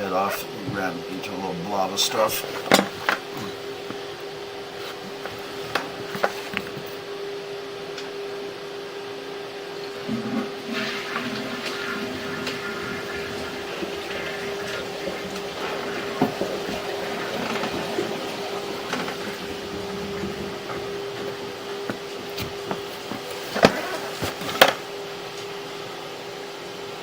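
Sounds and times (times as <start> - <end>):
steady hum: 0.0 - 27.0
toilet flush water rushing: 9.8 - 24.9.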